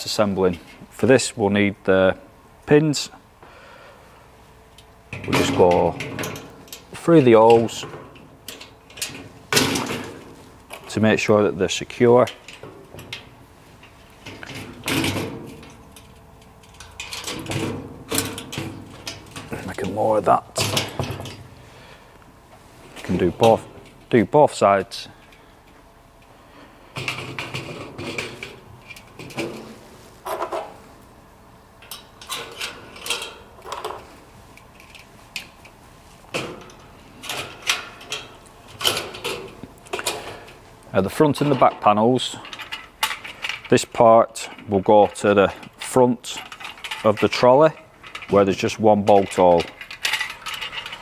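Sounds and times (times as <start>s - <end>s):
metal panels clattering: 5.1s - 21.6s, 26.9s - 31.0s, 31.8s - 51.0s
metal scraping and clattering: 27.0s - 30.8s, 36.3s - 51.0s.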